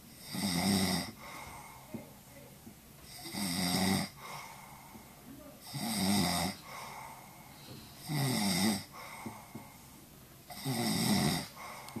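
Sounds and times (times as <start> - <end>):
man snoring: 0.2 - 1.4, 3.1 - 4.4, 5.6 - 9.5, 10.5 - 12.0
quiet breathing: 1.0 - 12.0.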